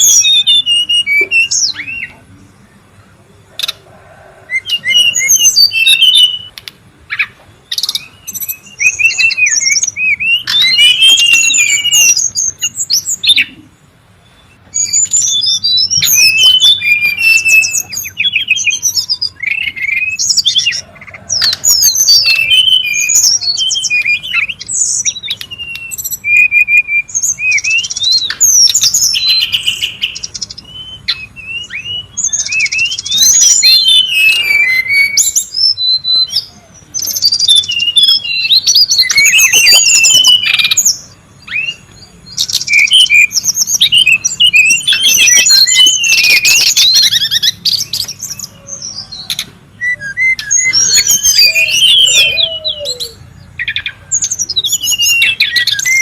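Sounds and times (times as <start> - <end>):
bird singing high whistles and chirps: 0.0 - 2.2, 3.6 - 56.0.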